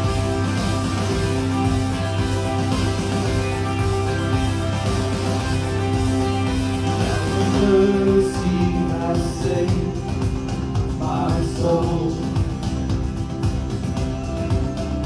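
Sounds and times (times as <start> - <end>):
band playing held chords: 0.0 - 15.0
people singing: 7.0 - 13.1.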